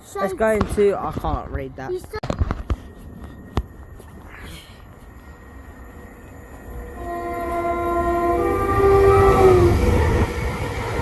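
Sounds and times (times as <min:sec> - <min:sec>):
train rumble: 0:01.2 - 0:11.0
train horn: 0:06.8 - 0:10.6.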